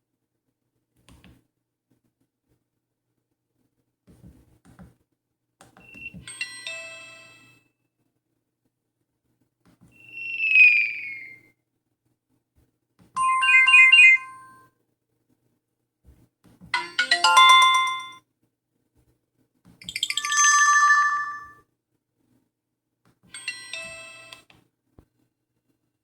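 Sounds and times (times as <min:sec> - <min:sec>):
phone electronic alert tunes: 0:13.2 - 0:14.6, 0:16.8 - 0:18.2, 0:20.0 - 0:21.6.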